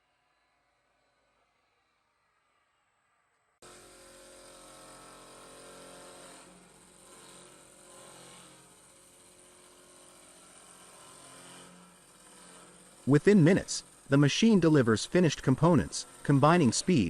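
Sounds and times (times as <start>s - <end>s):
woodworking machinery humming: 3.7s - 17.0s.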